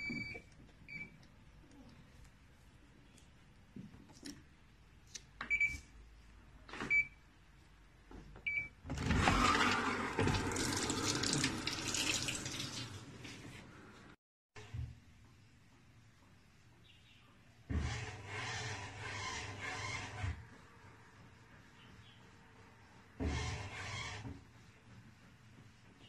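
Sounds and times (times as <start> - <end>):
water rushing into washing machine: 8.9 - 13.6.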